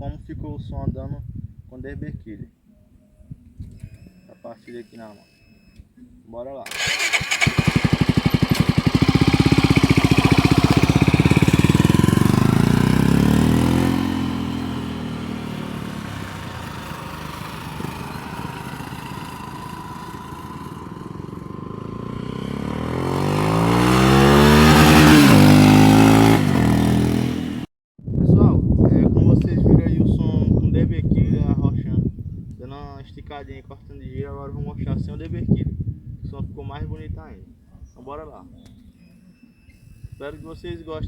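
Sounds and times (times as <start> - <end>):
motorcycle exhaust passing by: 6.7 - 27.7.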